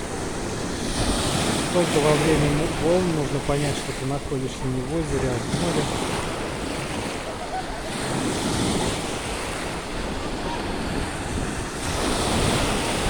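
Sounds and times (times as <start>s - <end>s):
sea waves washing ashore: 0.0s - 13.0s.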